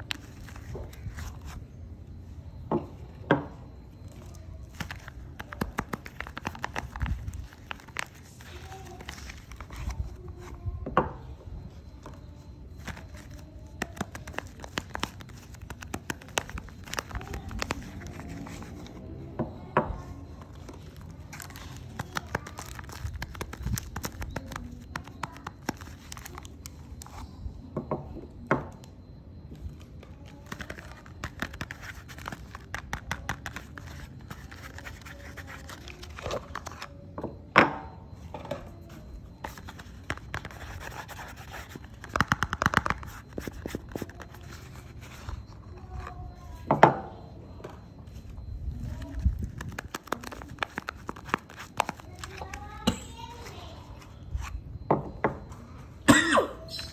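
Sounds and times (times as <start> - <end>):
packaging crinkling and tearing: 21.0 - 26.8.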